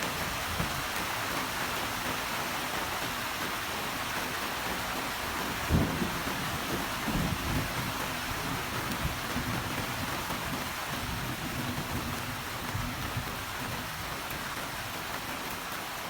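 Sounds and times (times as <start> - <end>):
rain falling: 0.0 - 16.0
thunder crack and rumble: 5.6 - 13.4.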